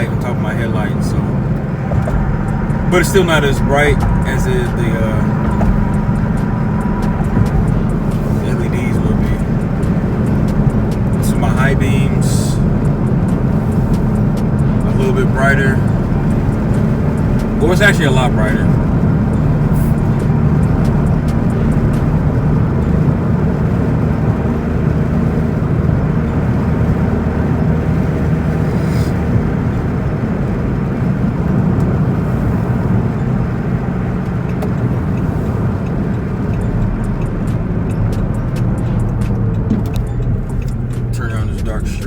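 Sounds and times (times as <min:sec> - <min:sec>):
car engine humming: 0:00.0 - 0:42.0.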